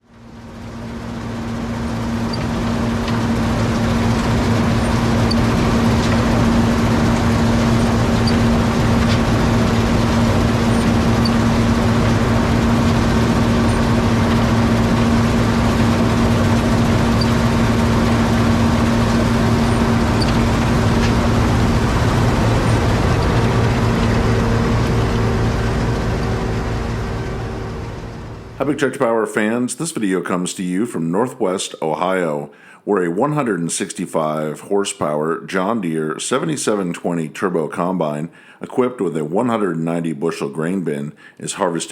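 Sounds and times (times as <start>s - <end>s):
combine harvester engine drone: 0.0s - 28.9s.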